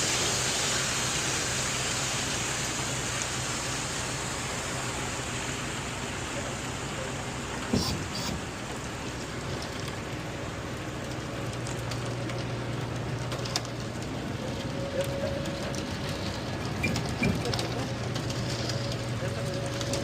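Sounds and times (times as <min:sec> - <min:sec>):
scattered clicks and knocks: 0:11.1 - 0:20.0.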